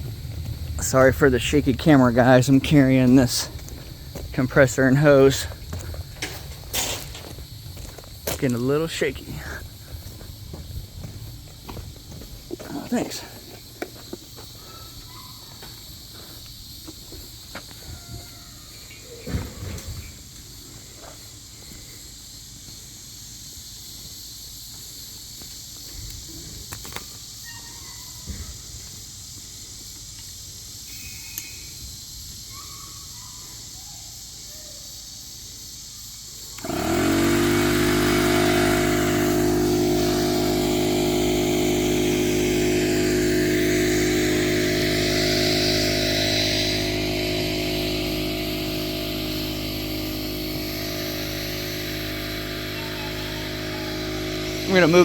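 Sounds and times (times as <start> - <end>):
compressor hiss: 0.0 - 14.4, 34.2 - 55.0
air compressor running: 0.0 - 15.1, 36.4 - 55.0
faint outdoor sounds: 0.0 - 55.0.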